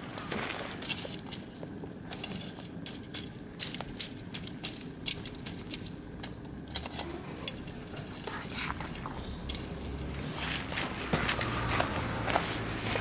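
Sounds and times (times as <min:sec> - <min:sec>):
logs crackling and popping in grill: 0:00.0 - 0:13.0.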